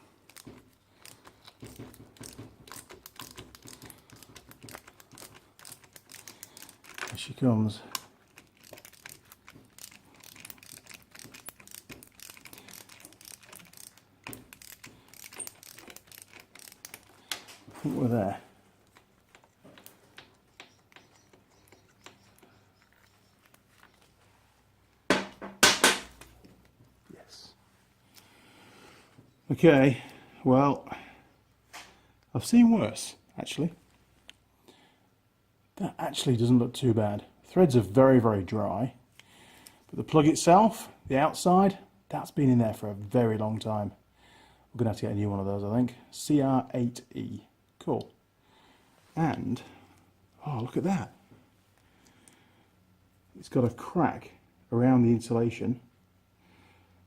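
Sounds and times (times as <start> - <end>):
loud handling noises: 0.0 - 24.2, 25.0 - 26.6
socket wrench clicking and creaking: 0.3 - 7.2, 7.9 - 17.4, 18.8 - 24.0.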